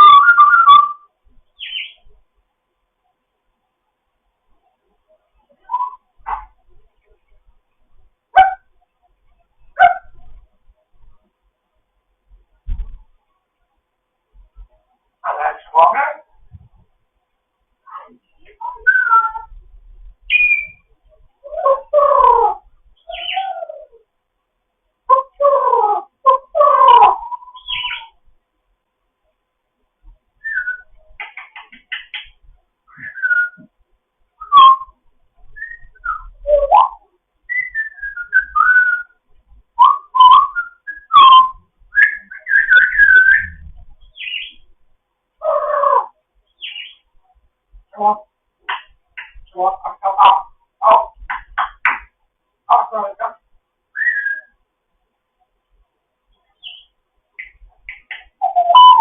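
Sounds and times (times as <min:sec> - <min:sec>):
parrot whistling and chattering: 0:00.0 - 0:02.0, 0:05.6 - 0:06.5, 0:18.5 - 0:19.6, 0:20.3 - 0:20.8, 0:21.4 - 0:24.0, 0:25.1 - 0:28.2, 0:30.4 - 0:33.7, 0:34.4 - 0:35.0, 0:35.6 - 0:39.2, 0:39.8 - 0:44.6, 0:54.0 - 0:54.5, 0:56.6 - 0:59.0.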